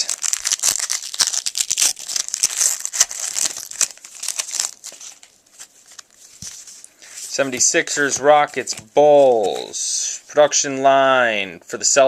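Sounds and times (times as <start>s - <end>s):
foil wrapper crinkling: 0.0s - 8.8s.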